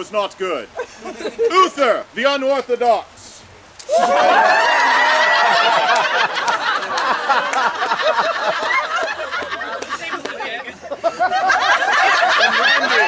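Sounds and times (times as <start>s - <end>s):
audience calling out: 3.9s - 8.0s
audience laughing: 3.9s - 13.0s.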